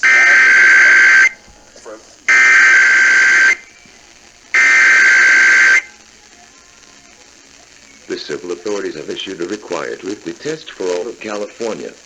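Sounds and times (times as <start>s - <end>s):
digital data tone bursts: 0.0s - 1.4s, 2.3s - 3.7s, 4.6s - 5.9s.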